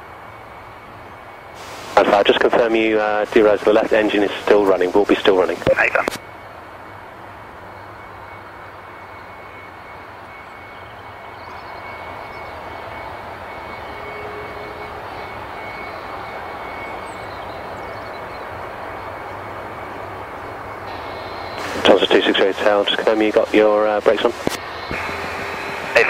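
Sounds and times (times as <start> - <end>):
jet engine rumble and whine: 0.0 - 26.0.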